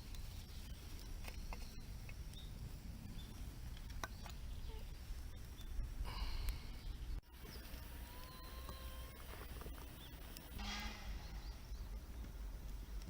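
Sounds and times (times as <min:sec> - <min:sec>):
hissing burst: 0:07.3 - 0:11.8
steady low rumble: 0:09.0 - 0:13.0.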